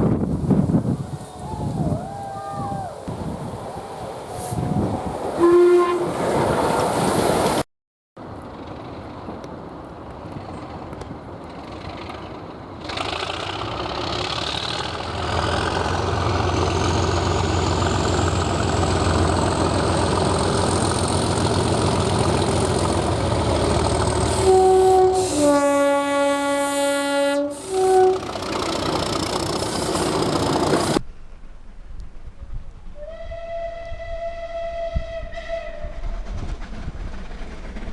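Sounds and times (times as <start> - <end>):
diesel train engine passing: 1.8 - 7.6, 8.2 - 31.0, 33.9 - 37.9
two-tone train air horn: 5.4 - 6.1, 24.2 - 28.4, 33.0 - 36.0.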